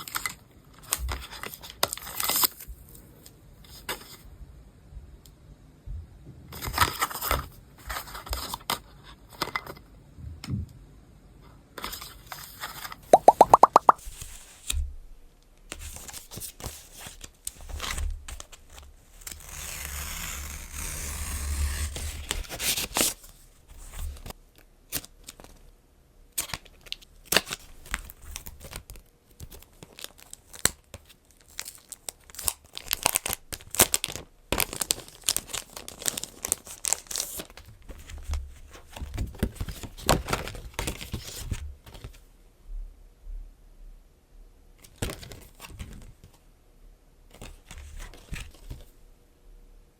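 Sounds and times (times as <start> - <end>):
packaging tearing and crinkling: 26.4 - 42.0.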